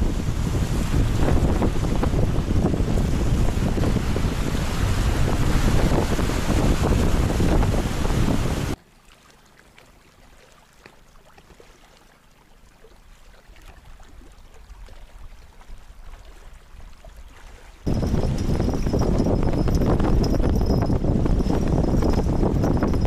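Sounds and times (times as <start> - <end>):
wind buffeting microphone: 0.0 - 8.8, 17.8 - 23.0.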